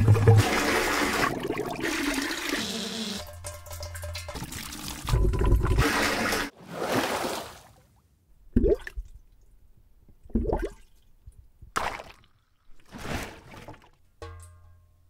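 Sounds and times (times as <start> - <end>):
rushing water: 5.8 - 7.7.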